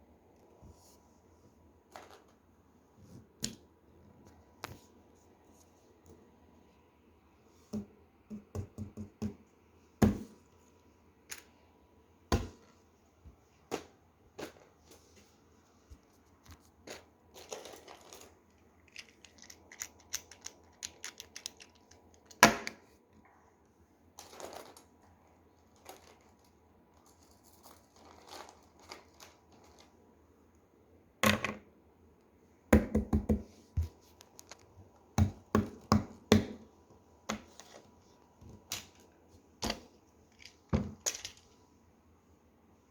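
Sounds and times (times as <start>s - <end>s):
plastic toys clicking and knocking: 16.9s - 22.8s, 38.5s - 41.6s.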